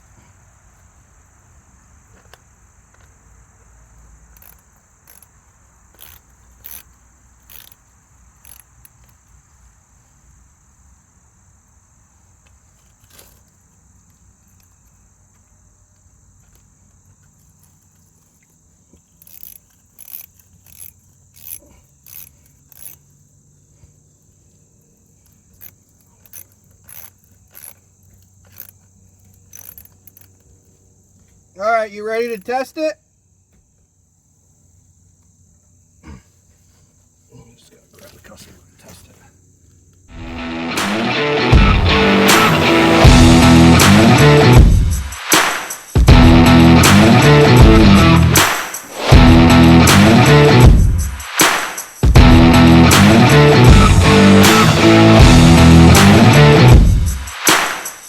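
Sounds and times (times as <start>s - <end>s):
crickets chirping: 0.0s - 58.0s
sharp clicks: 48.1s - 49.2s.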